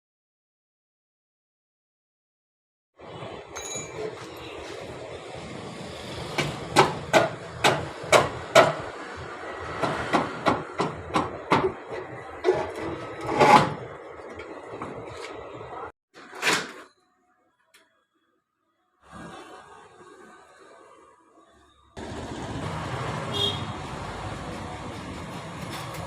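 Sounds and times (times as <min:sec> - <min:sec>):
sharp knocks and clatter: 0:09.8 - 0:13.8, 0:24.5 - 0:26.0.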